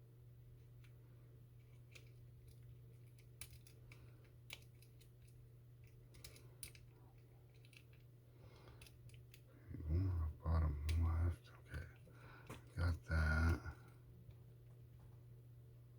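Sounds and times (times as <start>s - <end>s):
steady low hum: 0.0s - 15.9s
lock pick clicking and scraping: 1.6s - 6.9s.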